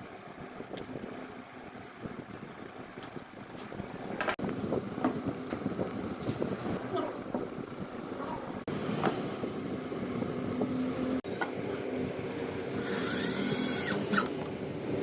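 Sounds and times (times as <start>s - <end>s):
power drill motor humming: 12.7s - 14.5s.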